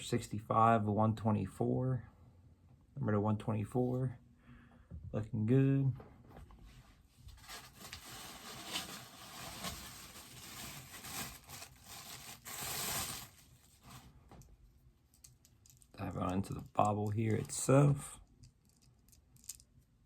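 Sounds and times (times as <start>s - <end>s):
packaging rustling and tearing: 7.4s - 14.1s.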